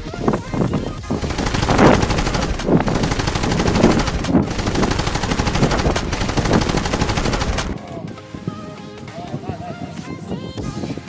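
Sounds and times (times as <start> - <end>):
rapid rattle of clicks: 1.0 - 7.8.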